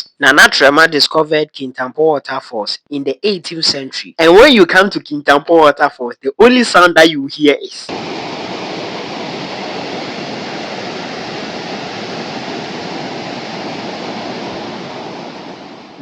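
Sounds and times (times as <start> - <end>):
waterfall pouring over rocks: 7.9 - 15.3.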